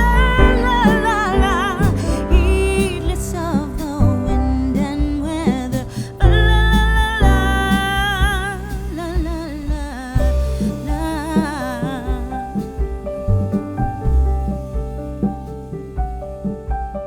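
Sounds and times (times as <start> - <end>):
slow musical accompaniment: 0.0 - 17.0.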